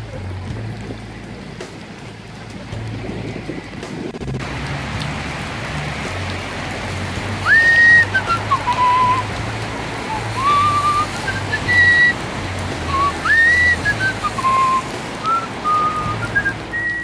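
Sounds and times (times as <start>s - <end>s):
low pulsing bass: 0.0s - 16.9s
rain hissing: 0.0s - 17.0s
person whistling a slow tune: 7.4s - 9.3s, 10.1s - 12.2s, 12.9s - 17.0s.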